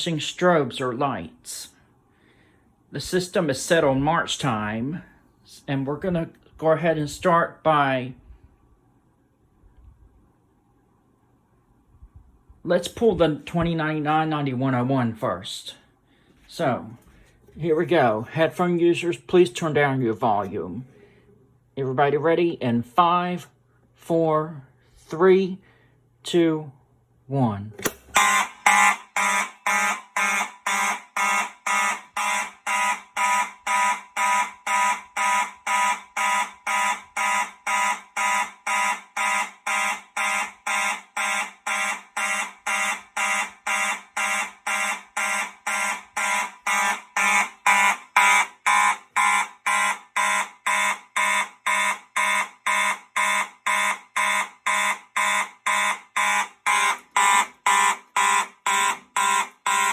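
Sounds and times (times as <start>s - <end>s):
fire alarm horns pulsing: 16.5s - 20.9s, 28.1s - 59.9s.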